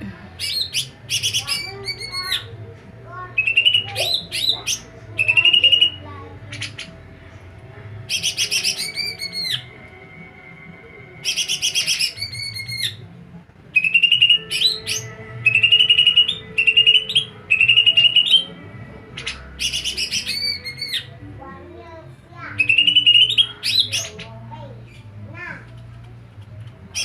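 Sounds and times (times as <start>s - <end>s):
songbird trilling: 0.4s - 2.5s, 3.4s - 7.0s, 8.1s - 9.7s, 11.2s - 13.0s, 13.8s - 18.6s, 19.2s - 21.1s, 22.6s - 24.3s.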